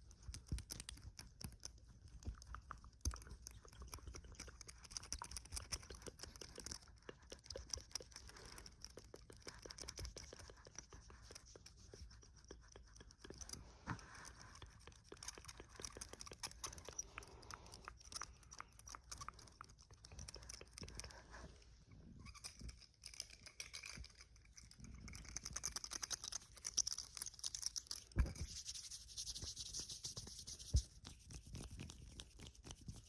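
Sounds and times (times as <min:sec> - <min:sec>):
tapping clicking and scratching: 0:00.0 - 0:21.4.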